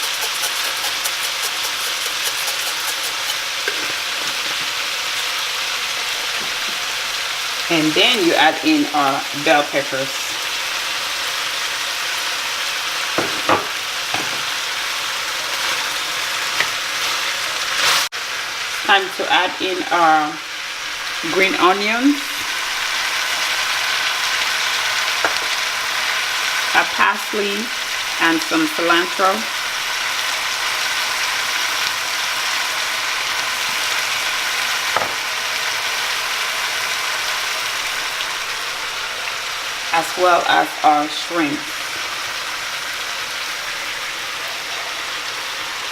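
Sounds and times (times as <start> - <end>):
vegetables sizzling in a hot pan: 0.0 - 45.9
utensil knocking against pan: 13.2 - 14.5, 25.2 - 25.5, 35.0 - 35.2.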